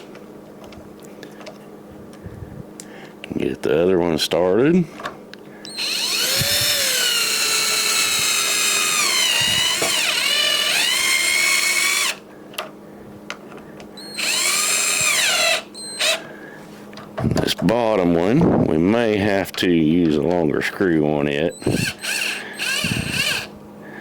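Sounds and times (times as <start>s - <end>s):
power drill driving screws: 5.7s - 12.2s, 14.0s - 16.2s, 21.6s - 23.5s.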